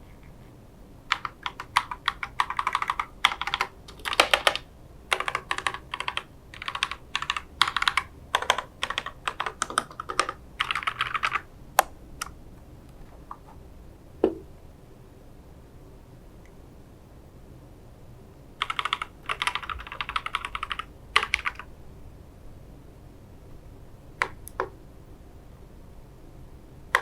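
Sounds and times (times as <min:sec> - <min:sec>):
mechanical keyboard typing: 0:01.1 - 0:12.4, 0:18.6 - 0:21.7, 0:24.2 - 0:24.8.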